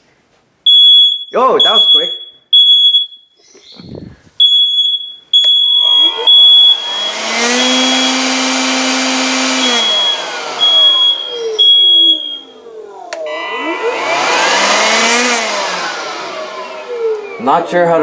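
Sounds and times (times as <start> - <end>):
smoke alarm beeping: 0.7 - 3.4, 4.4 - 17.5
electric blower running: 5.4 - 18.0.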